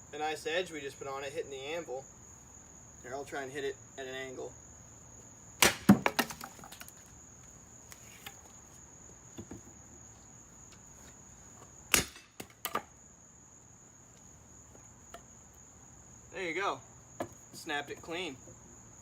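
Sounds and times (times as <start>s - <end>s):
crickets chirping: 0.0s - 19.0s
axe chopping log: 5.6s - 6.9s, 11.9s - 12.9s
wood cracking: 5.6s - 7.1s.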